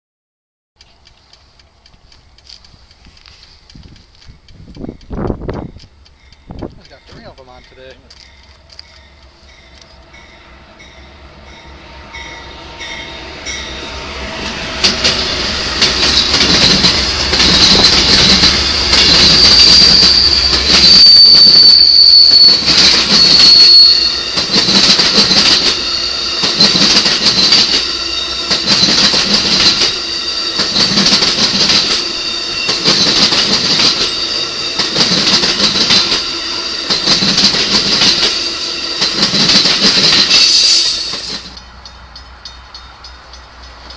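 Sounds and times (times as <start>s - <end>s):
train wheels clicking over rail joints: 0.8s - 10.1s, 14.4s - 43.9s
high-pitched wheel squeal: 8.8s - 39.6s, 40.2s - 41.6s.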